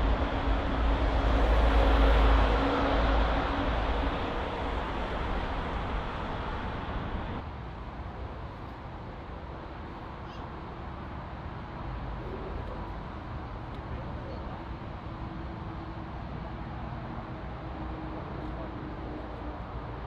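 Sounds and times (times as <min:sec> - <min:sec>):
jet airliner engine noise: 0:00.0 - 0:20.0.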